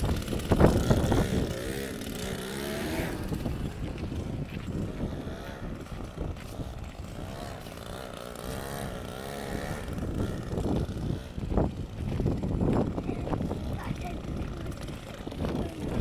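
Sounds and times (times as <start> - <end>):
small engine of radio-controlled car: 0.0 - 16.0.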